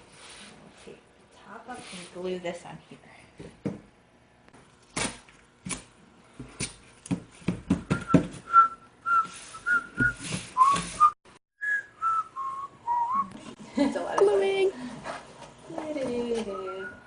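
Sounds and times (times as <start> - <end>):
person whistling a tune: 7.9 - 13.3.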